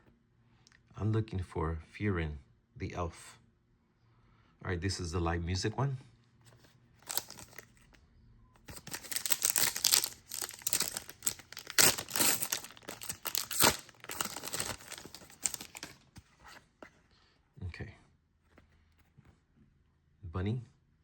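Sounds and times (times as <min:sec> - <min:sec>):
wrapper crinkling and tearing: 0:07.0 - 0:07.7, 0:08.7 - 0:16.0.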